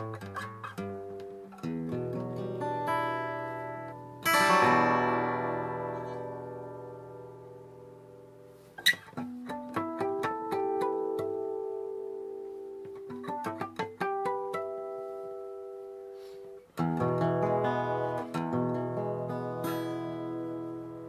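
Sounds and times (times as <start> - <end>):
acoustic guitar playing: 0.0 - 21.0.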